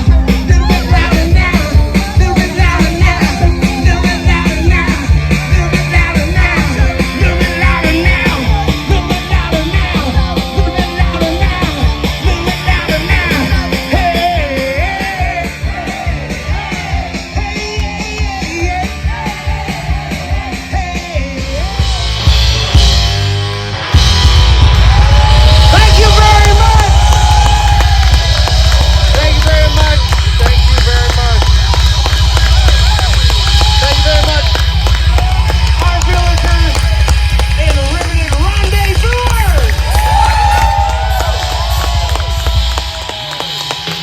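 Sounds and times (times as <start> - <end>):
person singing: 0.0 - 22.1
fast drum beat: 0.0 - 23.2, 24.0 - 44.0
rock band playing: 0.0 - 44.0.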